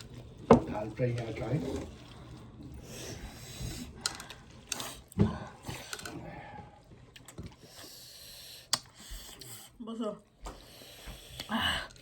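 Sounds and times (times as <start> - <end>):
slurping: 0.0 - 9.8
chewing: 1.1 - 6.2, 6.8 - 9.8
breathing: 2.2 - 6.8, 7.6 - 9.8, 10.5 - 12.0.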